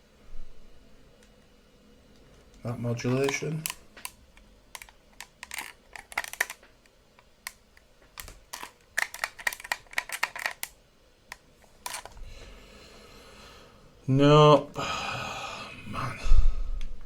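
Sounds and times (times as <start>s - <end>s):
plastic buttons clicking: 3.0s - 6.6s, 8.2s - 10.7s.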